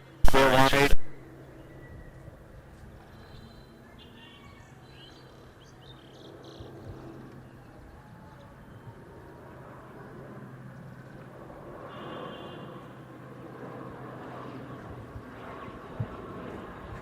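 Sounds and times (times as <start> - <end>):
steady low hum: 0.0 - 1.2.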